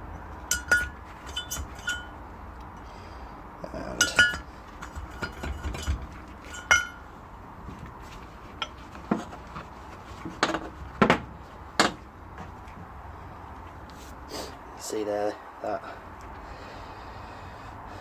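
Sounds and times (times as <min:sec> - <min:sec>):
metal parts clinking: 0:00.3 - 0:02.2, 0:03.9 - 0:07.0
dull knocks: 0:10.2 - 0:12.9.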